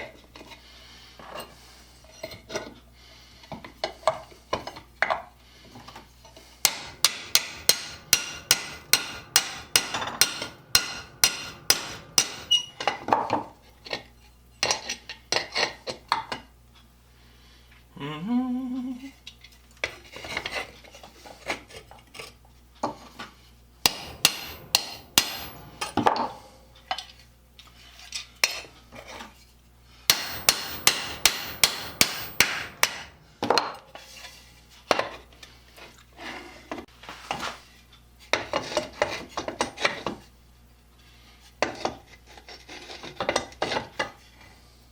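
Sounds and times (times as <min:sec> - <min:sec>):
hammer striking steel rivet: 0:06.6 - 0:13.5, 0:23.9 - 0:26.4, 0:30.1 - 0:33.8.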